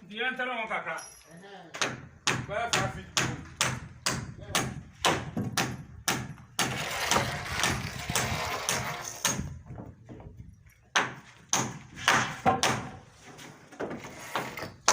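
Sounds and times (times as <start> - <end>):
hammer driving nails into timber: 1.8 - 9.6, 11.0 - 13.0.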